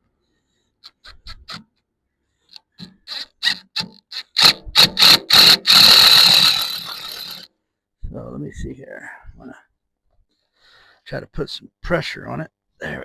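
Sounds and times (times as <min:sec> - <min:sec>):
tool working wood: 0:02.8 - 0:07.5.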